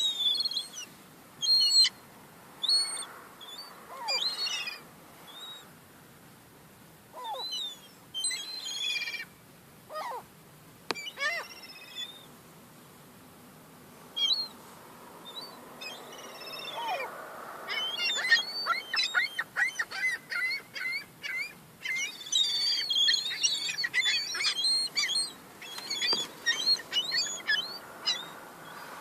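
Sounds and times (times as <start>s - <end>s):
young gulls squealing: 0.0s - 2.0s, 2.6s - 5.7s, 7.2s - 9.3s, 9.9s - 10.3s, 10.9s - 12.3s, 15.3s - 29.0s.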